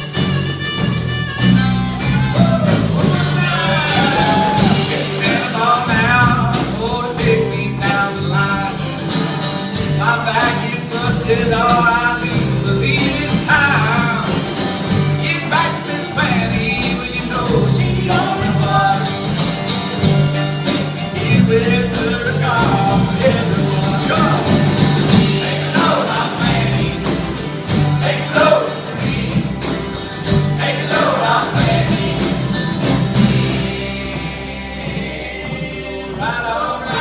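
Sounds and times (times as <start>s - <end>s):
bass: 0.0s - 37.0s
guitar: 0.0s - 37.0s
person singing: 2.1s - 8.8s.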